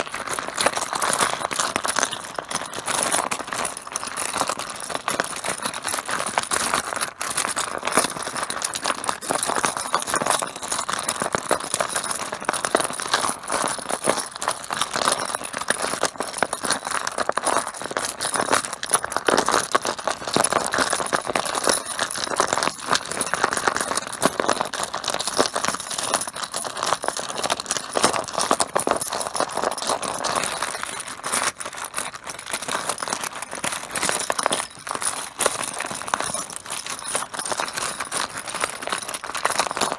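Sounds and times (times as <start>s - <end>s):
mahjong tiles clattering: 0.0s - 39.9s.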